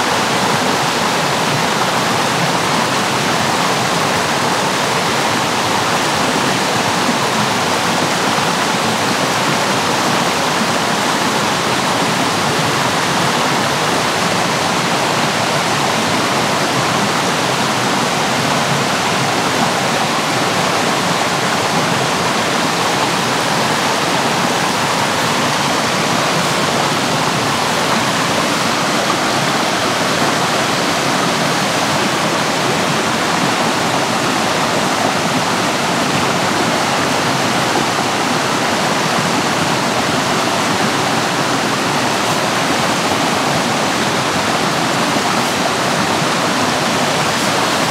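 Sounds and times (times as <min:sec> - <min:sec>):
rushing water: 0:00.0 - 0:47.9.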